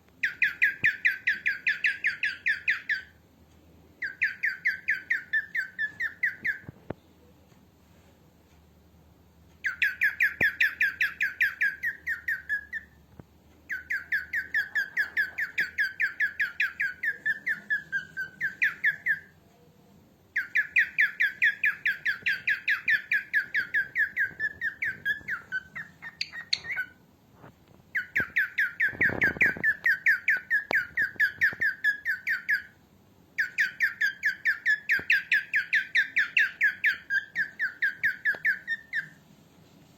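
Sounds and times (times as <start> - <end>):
cockatiel squawky chirps: 13.7 - 19.3, 20.4 - 27.0, 28.0 - 32.7.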